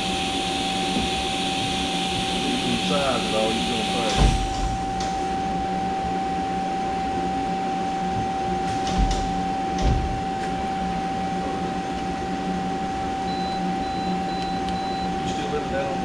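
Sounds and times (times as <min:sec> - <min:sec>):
high-pitched machine whine: 0:00.0 - 0:16.0
low hum: 0:00.0 - 0:16.0.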